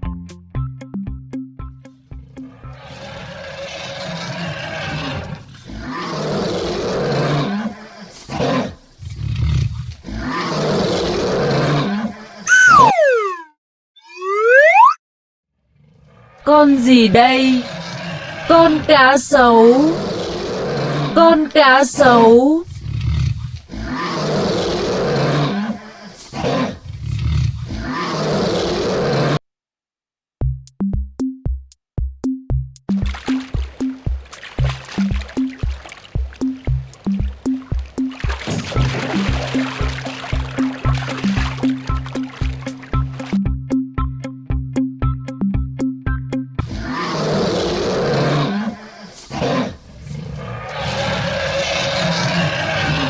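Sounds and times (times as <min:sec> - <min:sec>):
lion roaring and growling: 0:02.5 - 0:12.9, 0:20.0 - 0:21.2, 0:22.7 - 0:29.4, 0:46.6 - 0:53.0
cartoon boing sound effect: 0:12.5 - 0:15.0, 0:36.4 - 0:44.4
electronic drum beat: 0:30.4 - 0:46.6.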